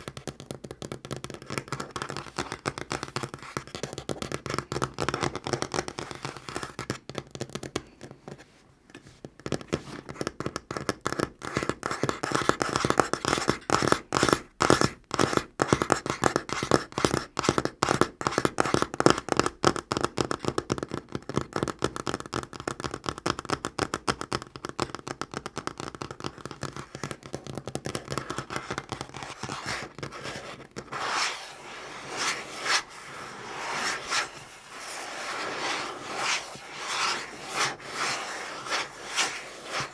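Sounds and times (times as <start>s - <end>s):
nails scratching a surface: 28.0s - 39.9s.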